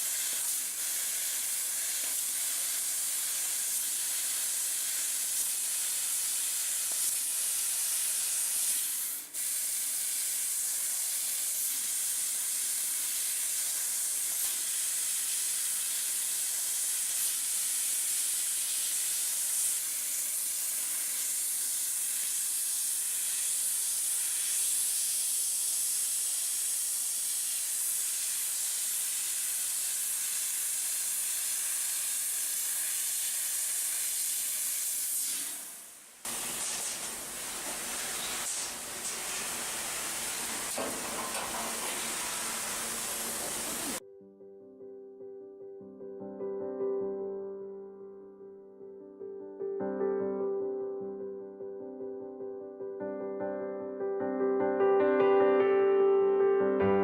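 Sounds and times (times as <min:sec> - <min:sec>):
high hissing noise: 0:21.1 - 0:44.0.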